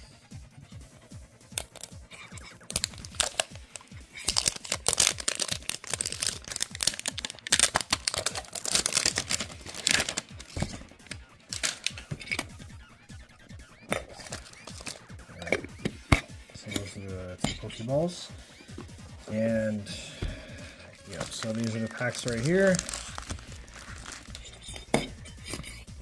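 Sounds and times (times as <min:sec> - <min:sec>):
packaging crinkling and tearing: 0:01.6 - 0:12.6, 0:13.9 - 0:15.7, 0:21.0 - 0:25.8.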